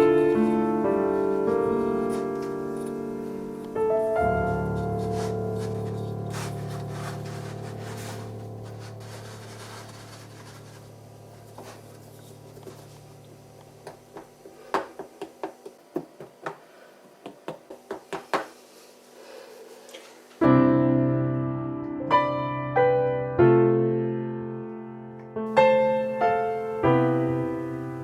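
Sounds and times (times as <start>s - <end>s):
soft piano music: 0.0s - 14.4s, 20.4s - 28.0s.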